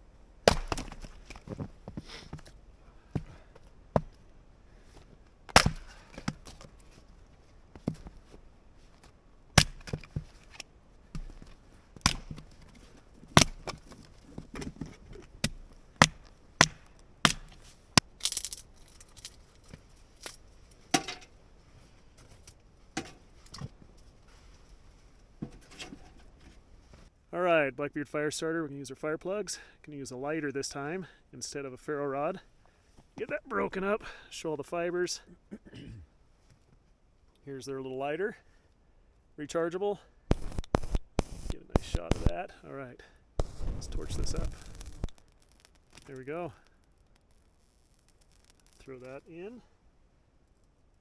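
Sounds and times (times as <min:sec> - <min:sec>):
wood being chopped: 0:00.5 - 0:01.4, 0:05.5 - 0:06.4, 0:09.6 - 0:10.1, 0:11.2 - 0:12.4, 0:15.4 - 0:17.6.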